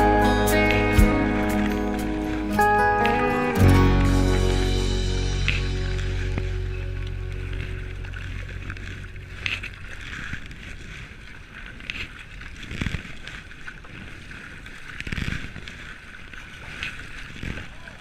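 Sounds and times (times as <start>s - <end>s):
paddle dipping and water splashing: 0.0s - 18.0s.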